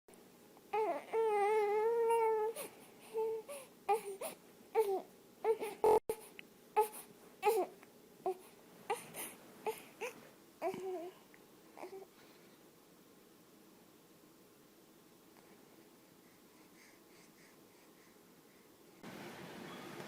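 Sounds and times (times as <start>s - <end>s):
baby crying: 0.7s - 6.0s.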